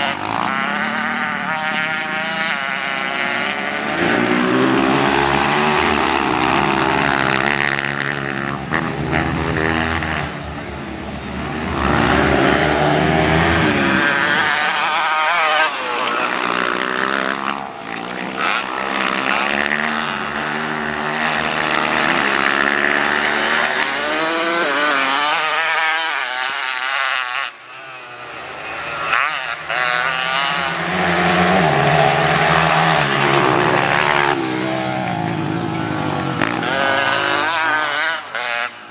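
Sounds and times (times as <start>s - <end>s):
motorcycle engine revving: 0.0s - 38.9s.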